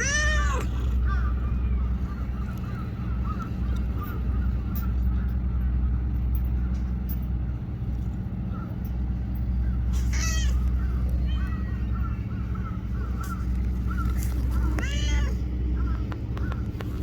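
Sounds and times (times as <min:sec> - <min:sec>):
cat meowing: 0:00.0 - 0:02.0, 0:10.1 - 0:12.2, 0:14.5 - 0:15.5
low rumble: 0:00.4 - 0:17.0.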